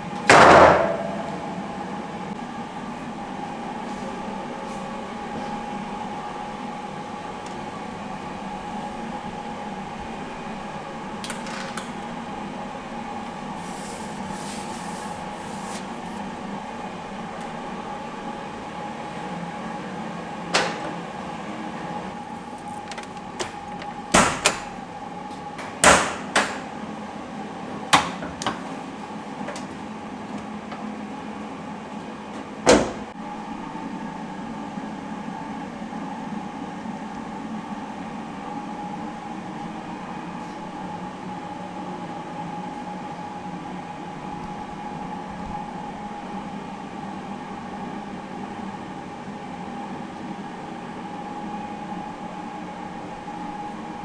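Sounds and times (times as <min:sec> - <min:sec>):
steady hum: 0:00.0 - 0:20.5.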